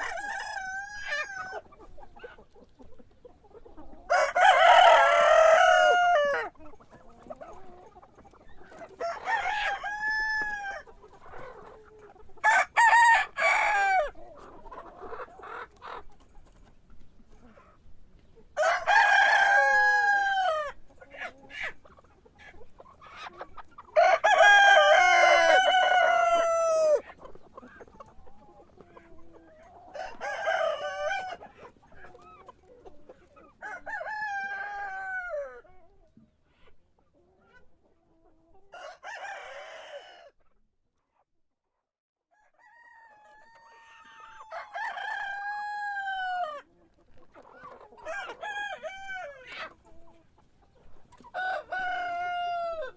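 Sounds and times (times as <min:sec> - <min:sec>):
rooster crowing: 0:04.1 - 0:06.5, 0:09.0 - 0:10.8, 0:12.4 - 0:14.1, 0:18.6 - 0:20.8, 0:24.0 - 0:27.0, 0:33.6 - 0:35.6, 0:38.8 - 0:40.3, 0:42.4 - 0:46.6, 0:51.3 - 0:52.9.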